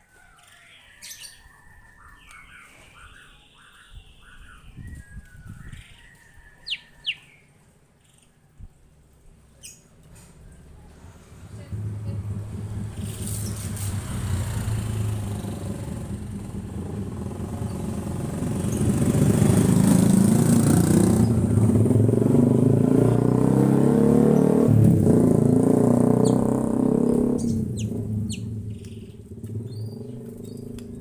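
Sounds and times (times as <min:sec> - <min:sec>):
high bird chirps: 0:00.2 - 0:08.3, 0:26.2 - 0:26.5, 0:27.1 - 0:30.7
passing vehicle engine: 0:09.9 - 0:31.0.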